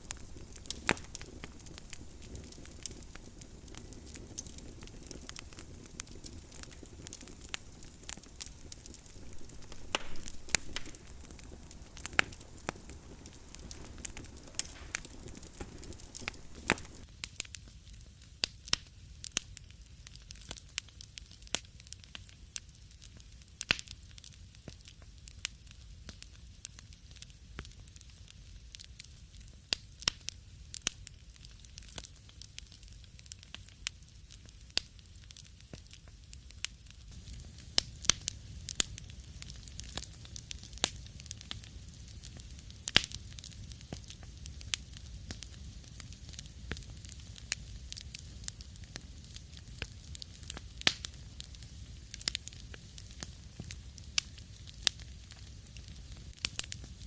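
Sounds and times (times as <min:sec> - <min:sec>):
low fire rumble: 0:00.0 - 0:17.1, 0:30.8 - 0:57.0
fire crackling and popping: 0:00.0 - 0:57.0.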